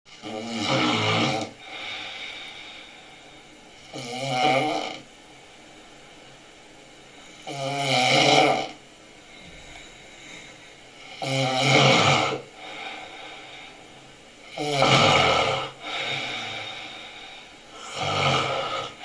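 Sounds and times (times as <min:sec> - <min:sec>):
man snoring loudly: 0:00.1 - 0:01.8, 0:03.9 - 0:05.1, 0:07.5 - 0:08.8, 0:11.0 - 0:13.0, 0:14.5 - 0:16.9, 0:17.8 - 0:19.0
quiet breathing: 0:00.1 - 0:04.0, 0:09.0 - 0:19.0.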